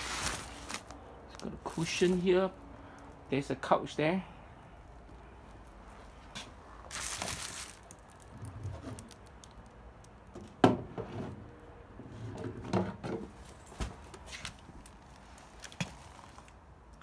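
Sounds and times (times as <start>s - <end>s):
rustling: 0.0s - 2.3s, 6.0s - 9.7s.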